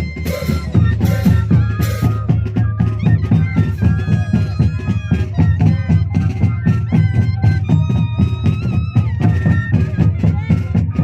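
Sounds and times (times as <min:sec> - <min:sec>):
cane flutes playing melody: 0:00.0 - 0:11.0
steady drum beat: 0:00.0 - 0:11.0.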